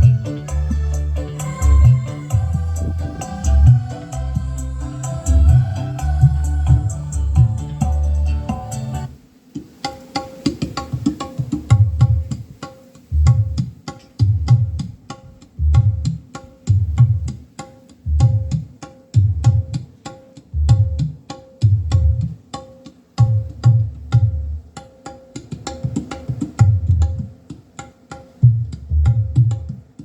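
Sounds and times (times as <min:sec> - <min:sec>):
percussive music over speakers: 0:00.0 - 0:09.1, 0:13.2 - 0:14.9, 0:15.7 - 0:17.4, 0:18.1 - 0:19.8, 0:20.6 - 0:22.4, 0:28.4 - 0:30.0.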